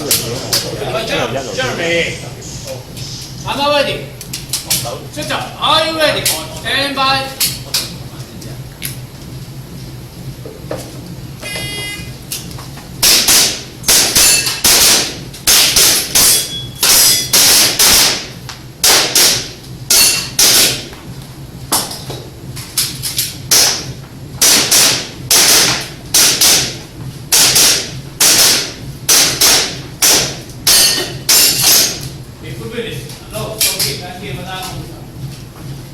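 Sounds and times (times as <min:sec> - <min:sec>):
shot timer beep: 0:11.4 - 0:12.1
rapid airsoft pistol shots: 0:13.0 - 0:20.8, 0:23.5 - 0:32.0.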